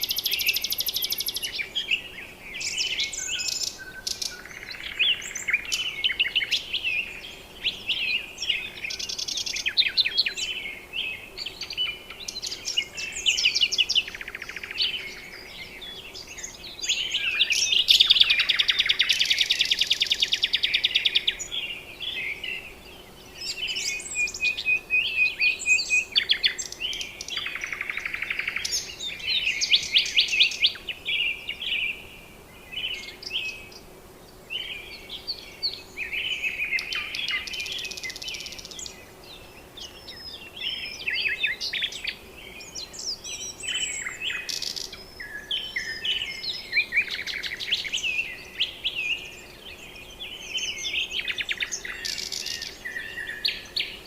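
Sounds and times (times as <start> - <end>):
birds chirping and trilling: 0.0 - 54.0.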